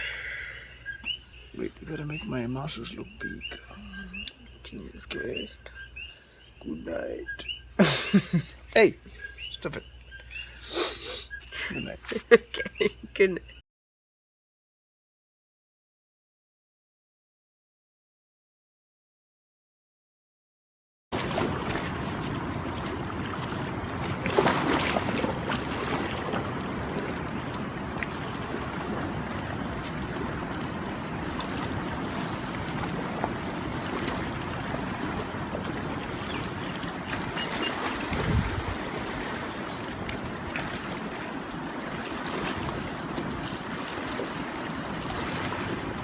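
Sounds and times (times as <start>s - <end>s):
ocean surf: 21.2s - 46.0s
wind on microphone: 21.2s - 46.0s.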